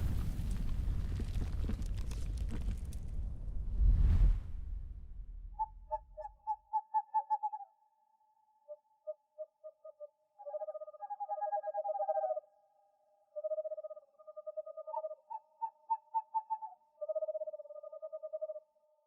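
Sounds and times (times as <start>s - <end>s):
owl trilling calls: 5.6s - 7.8s, 8.7s - 12.5s, 13.4s - 18.6s.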